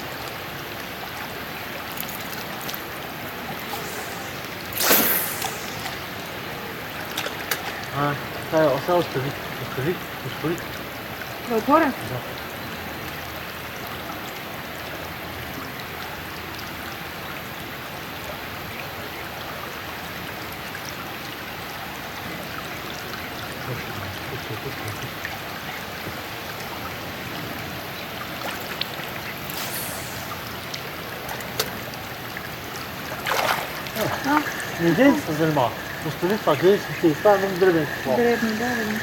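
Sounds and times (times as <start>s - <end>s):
river water rushing: 0.0s - 11.9s, 25.2s - 39.0s.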